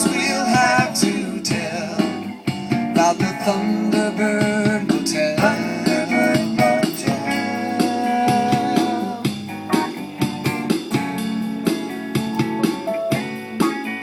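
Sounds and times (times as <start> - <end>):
steady beat: 2.5 - 14.0
guitar picking notes: 3.7 - 14.0.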